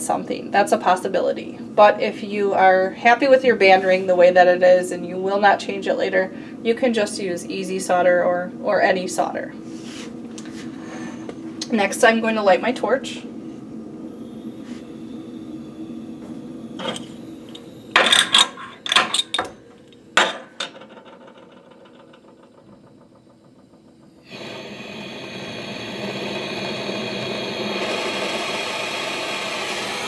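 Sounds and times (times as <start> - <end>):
torch flame hissing: 13.9 - 19.0, 24.2 - 30.0
torch igniter clicking: 24.3 - 28.8.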